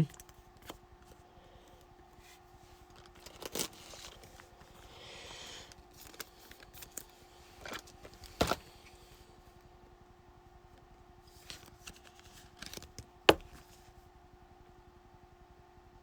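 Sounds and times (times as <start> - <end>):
faint steady hum: 0.0 - 16.0
cards rustling: 2.8 - 8.7, 11.4 - 13.8
cards clicking and tapping: 11.5 - 13.6.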